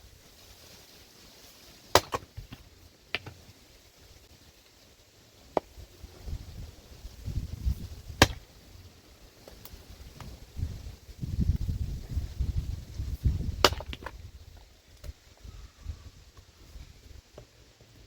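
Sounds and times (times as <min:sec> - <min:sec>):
axe chopping firewood: 0:01.9 - 0:03.5, 0:05.5 - 0:05.7, 0:08.1 - 0:08.5, 0:13.5 - 0:14.2.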